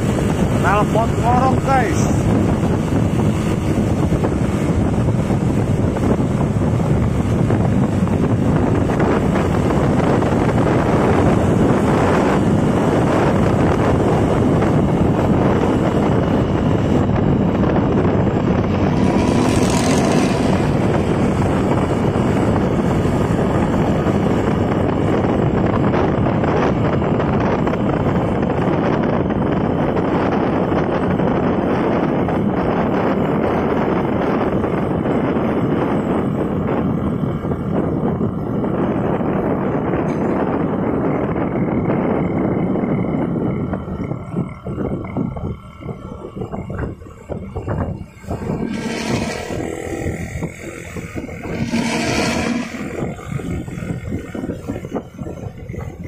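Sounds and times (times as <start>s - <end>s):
bus exhaust snoring loudly: 2.2s - 27.4s, 47.4s - 56.0s.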